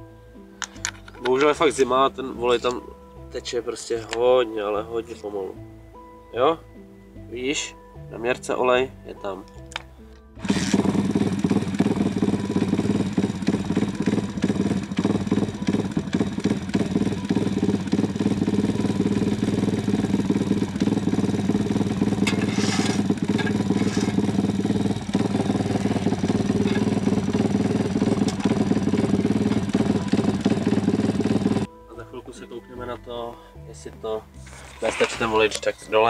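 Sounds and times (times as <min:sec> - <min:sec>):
motorcycle engine idling: 0:10.4 - 0:31.7.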